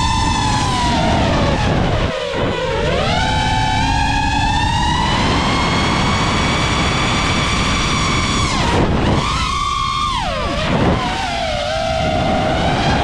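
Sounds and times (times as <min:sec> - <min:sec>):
quadcopter motors whining: 0:00.0 - 0:13.0.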